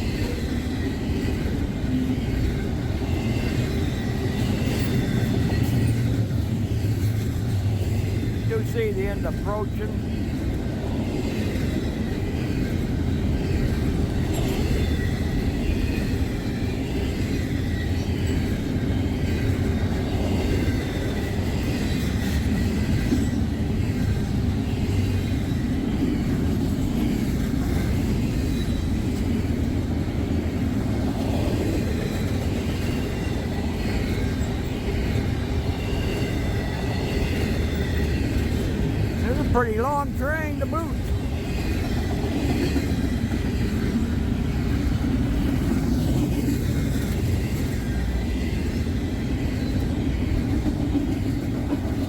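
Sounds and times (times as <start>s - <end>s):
freight train wheels rumbling: 0.0s - 52.0s.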